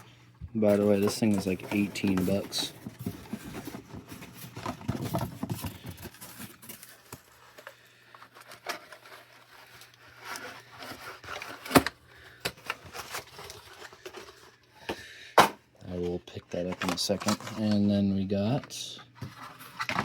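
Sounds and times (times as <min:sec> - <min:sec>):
packing material rustling: 0:00.6 - 0:14.6.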